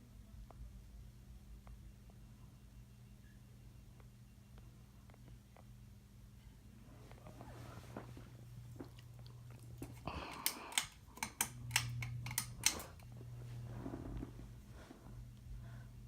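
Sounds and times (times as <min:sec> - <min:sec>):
ceiling fan motor humming: 0:00.0 - 0:16.0
sharp clicks: 0:10.3 - 0:13.1.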